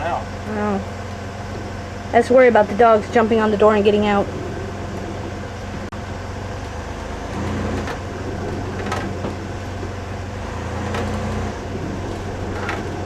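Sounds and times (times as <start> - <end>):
brake drum scraping: 0.0 - 13.0
motorhome engine droning: 0.0 - 13.0.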